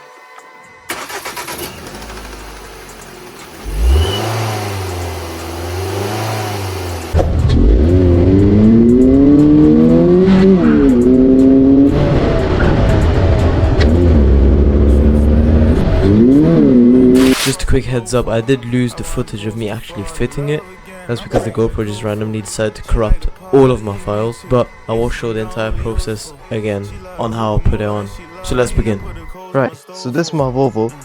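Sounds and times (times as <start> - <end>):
car engine starting and revving: 0.9 - 17.6.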